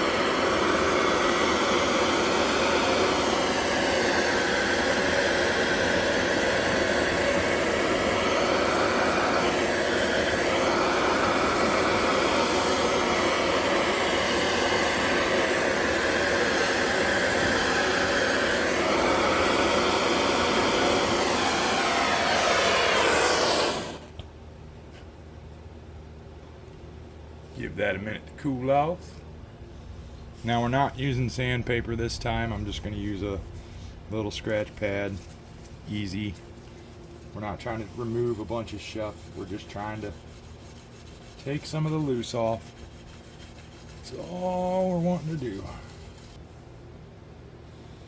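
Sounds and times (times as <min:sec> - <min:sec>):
torch flame rushing: 0:00.0 - 0:24.2, 0:29.6 - 0:38.4.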